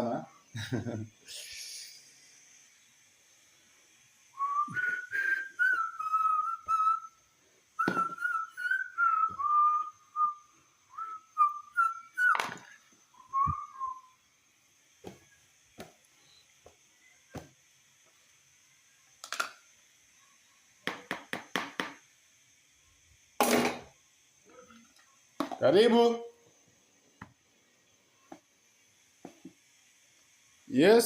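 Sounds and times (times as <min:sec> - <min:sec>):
person whistling a tune: 0:04.4 - 0:07.1, 0:07.8 - 0:12.4, 0:13.2 - 0:14.2.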